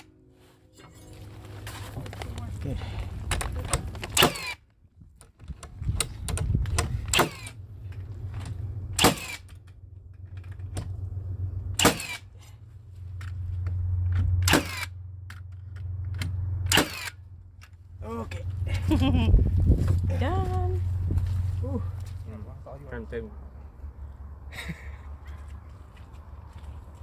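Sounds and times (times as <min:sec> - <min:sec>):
low steady rumble: 0:00.0 - 0:27.0
sharp clicks and knocks: 0:05.2 - 0:11.0.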